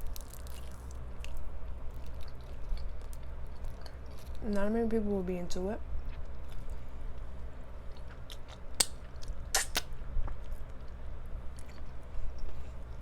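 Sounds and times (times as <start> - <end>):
chewing crispy fried chicken: 0.0 - 4.7, 5.9 - 13.0
low fan hum: 0.0 - 13.0
sharp crunching smacks: 8.3 - 10.0.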